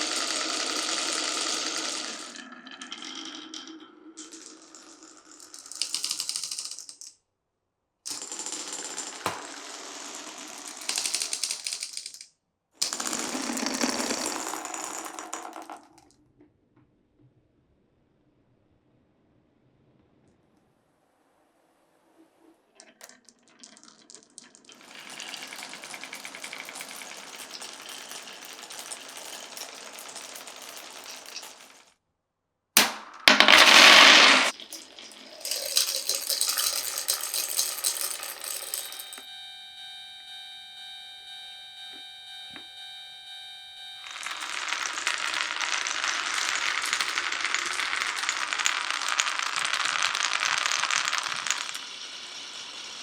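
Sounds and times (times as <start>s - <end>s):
marbles rattling down wooden run: 0.0s - 7.1s, 8.1s - 16.1s, 22.8s - 31.9s, 32.8s - 39.2s, 44.0s - 53.0s
ringing held tones: 38.4s - 44.3s.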